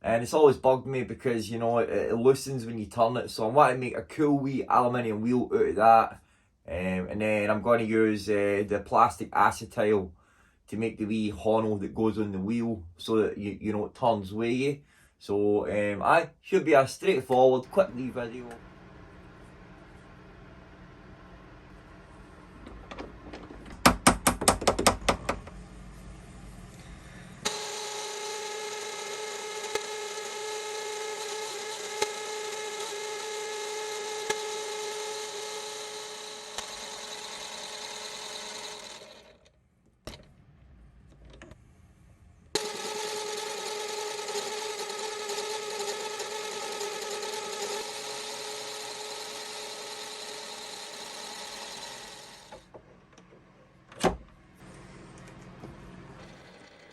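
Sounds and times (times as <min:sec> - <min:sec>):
electric power tool whining: 0:26.7 - 0:39.5, 0:42.5 - 0:53.3, 0:54.6 - 0:56.9.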